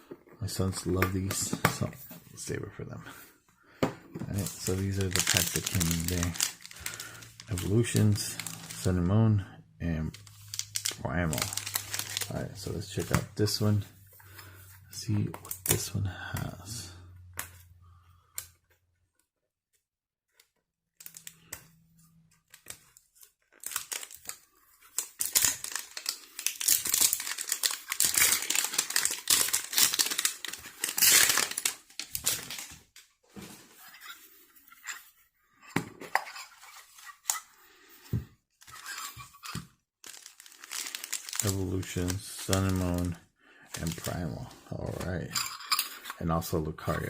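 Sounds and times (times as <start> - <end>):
plastic shrink-wrap tearing: 4.4 - 8.9, 10.2 - 12.6, 23.4 - 32.8, 38.6 - 43.2, 43.8 - 44.4.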